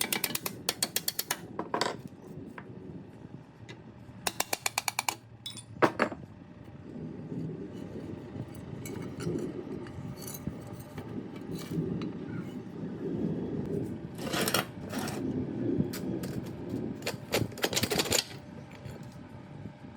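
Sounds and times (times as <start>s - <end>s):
low rumbling noise: 1.6s - 4.3s, 5.3s - 19.9s
small metal parts clinking: 4.3s - 6.2s, 10.2s - 11.8s, 17.0s - 19.1s.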